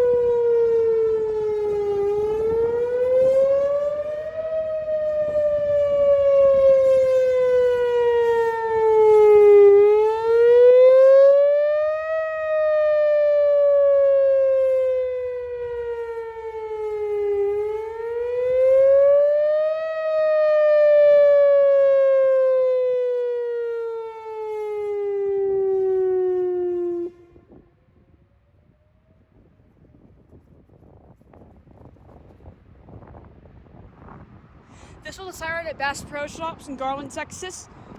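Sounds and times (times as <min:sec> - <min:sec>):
warning siren wailing: 0:00.0 - 0:29.2.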